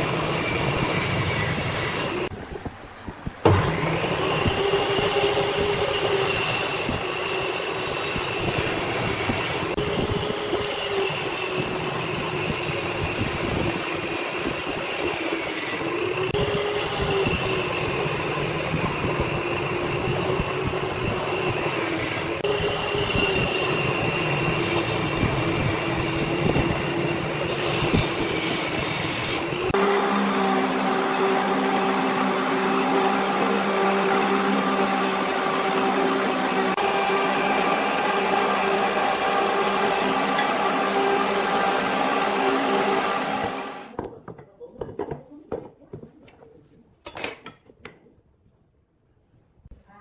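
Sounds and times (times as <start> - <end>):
power saw cutting wood: 0.0 - 2.3, 3.5 - 44.0.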